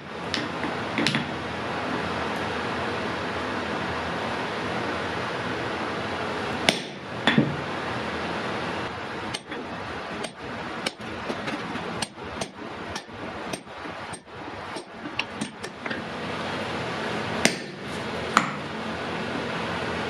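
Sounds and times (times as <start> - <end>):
hammer striking hot iron on anvil: 6.7 - 7.6, 9.3 - 16.0, 17.4 - 18.7.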